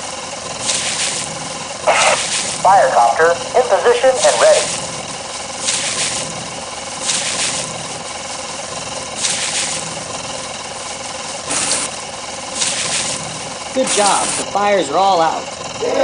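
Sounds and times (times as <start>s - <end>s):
toy helicopter motor hum: 0.0s - 16.0s
hissing water spray bursts: 0.6s - 2.7s, 4.2s - 14.4s.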